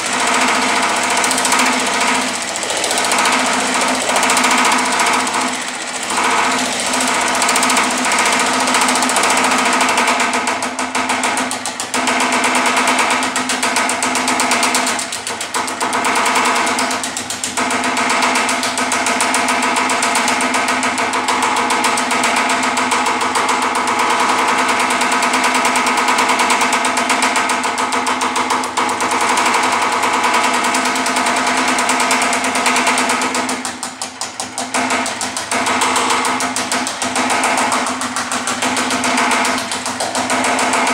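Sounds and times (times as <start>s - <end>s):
ringing machine hum: 0.0s - 15.0s
power hammer striking sheet metal: 0.0s - 40.9s.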